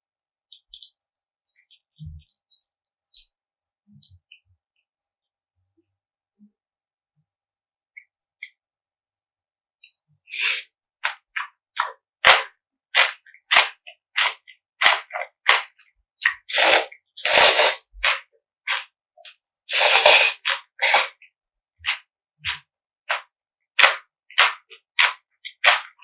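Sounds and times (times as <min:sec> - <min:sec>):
slurping: 0:10.3 - 0:10.6, 0:13.0 - 0:18.8, 0:19.7 - 0:21.2.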